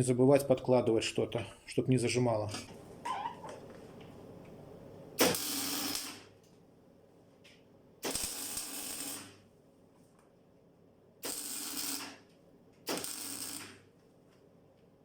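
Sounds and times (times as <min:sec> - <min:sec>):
faint welder hum: 0:02.5 - 0:14.5
crackling welding arc: 0:05.2 - 0:06.3, 0:08.0 - 0:09.4, 0:11.2 - 0:13.9.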